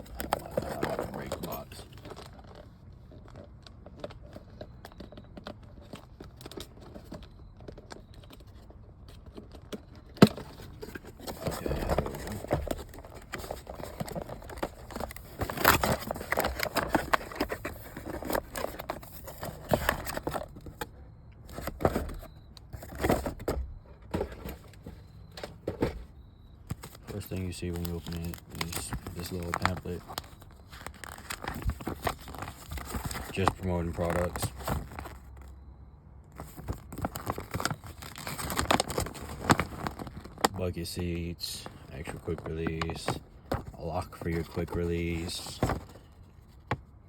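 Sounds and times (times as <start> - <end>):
packaging rustling and tearing: 0.0 - 3.4, 10.2 - 20.9, 26.7 - 35.5, 36.4 - 46.2.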